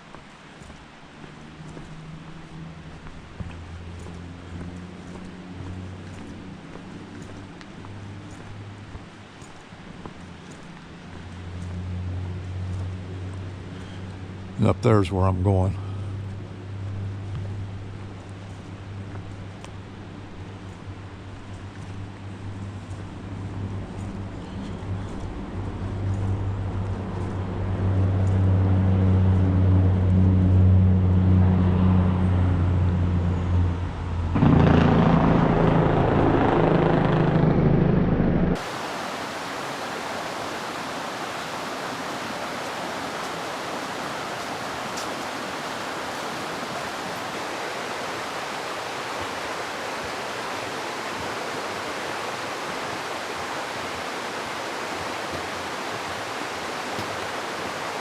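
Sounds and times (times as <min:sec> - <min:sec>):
creek rushing: 0:00.0 - 0:17.1, 0:38.6 - 0:58.0
road noise: 0:00.0 - 0:58.0
vehicle engine hum: 0:00.0 - 0:58.0.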